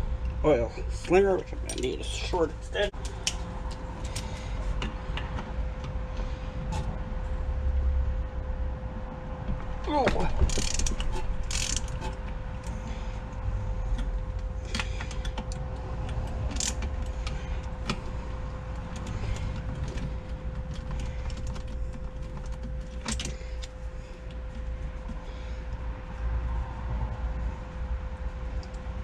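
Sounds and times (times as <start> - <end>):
steady background hum: 0.0 - 29.0
metallic clicks of hand tools: 10.5 - 12.1, 14.7 - 17.4.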